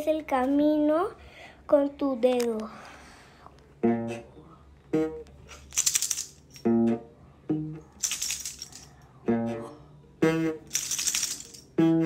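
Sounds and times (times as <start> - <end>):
plucked guitar notes: 3.8 - 5.3, 6.6 - 7.9, 9.2 - 10.0
shaker rattle: 5.5 - 6.7, 7.9 - 9.1, 10.7 - 11.8.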